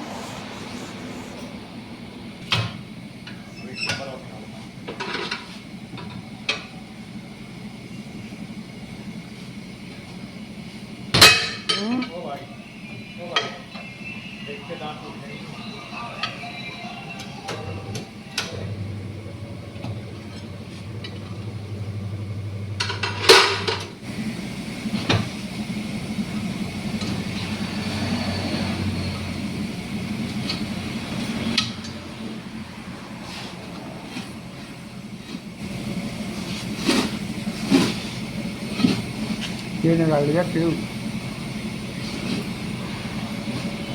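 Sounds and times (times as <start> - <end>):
motor hum: 18.5 - 31.5.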